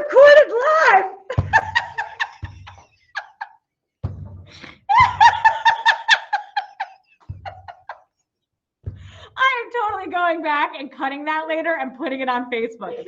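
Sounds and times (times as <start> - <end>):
woman laughing hard: 1.3 - 3.5, 4.9 - 8.0.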